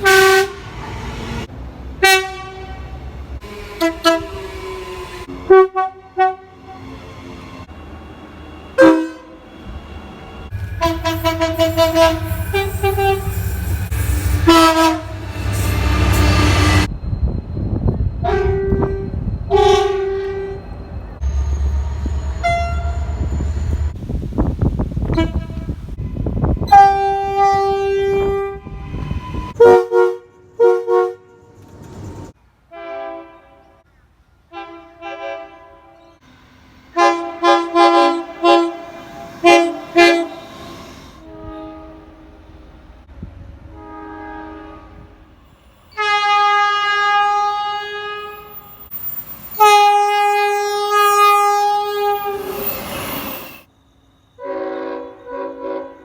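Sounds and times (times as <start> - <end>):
train air horn blasts: 0.0 - 0.8, 2.0 - 7.0, 8.8 - 9.8, 10.5 - 16.9, 18.2 - 20.6, 22.3 - 23.4, 25.0 - 31.6, 32.7 - 33.8, 34.5 - 36.2, 36.9 - 42.5, 43.7 - 53.5, 54.4 - 56.0.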